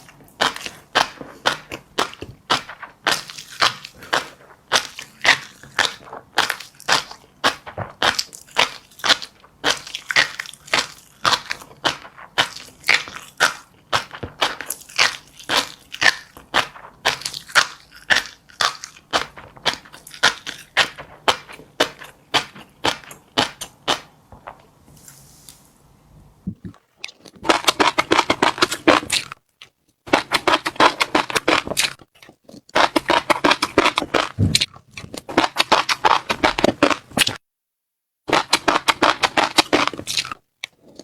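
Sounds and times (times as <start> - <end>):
crunchy seeds chewed: 0.0 - 24.6, 26.6 - 37.4, 38.3 - 41.0.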